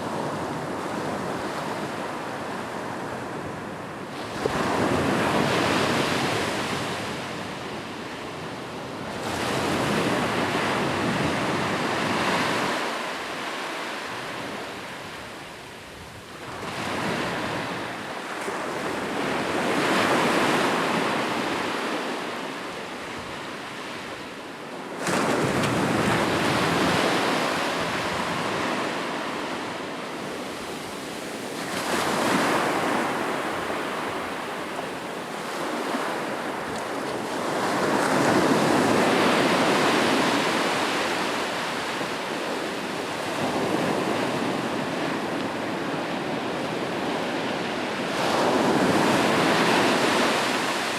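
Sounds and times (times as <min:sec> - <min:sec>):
ocean surf breaking: 0:30.4 - 0:42.2.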